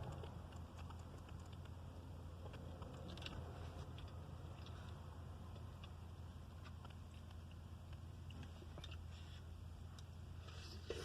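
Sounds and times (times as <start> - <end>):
low car interior hum: 0.0 - 11.0.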